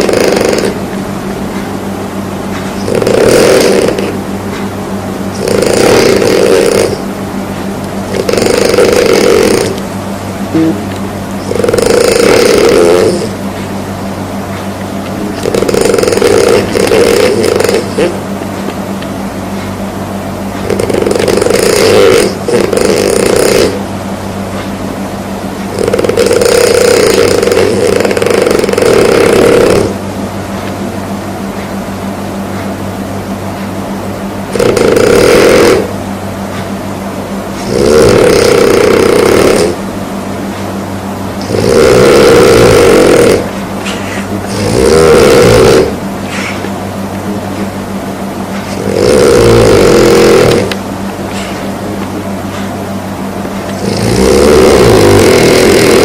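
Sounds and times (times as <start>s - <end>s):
person snoring loudly: 0.0s - 0.9s, 2.8s - 4.2s, 5.3s - 7.1s, 8.1s - 9.8s, 10.5s - 13.4s, 15.2s - 18.2s, 20.6s - 23.8s, 25.7s - 30.0s, 34.5s - 35.9s, 37.6s - 39.8s, 41.4s - 46.6s, 48.6s - 51.5s, 53.8s - 56.0s
steady low hum: 0.0s - 56.0s.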